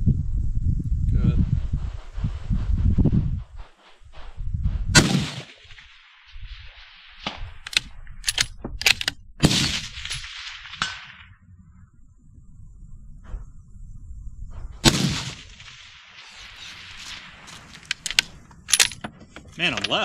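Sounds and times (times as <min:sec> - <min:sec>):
rifle shots with echo: 0:05.0 - 0:06.1, 0:09.4 - 0:11.2, 0:14.8 - 0:16.4.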